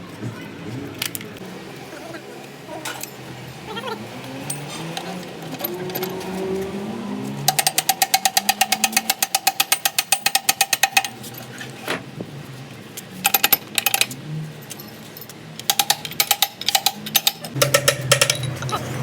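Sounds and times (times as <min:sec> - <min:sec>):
rapid metallic knocking: 0:07.4 - 0:11.2, 0:15.7 - 0:18.8.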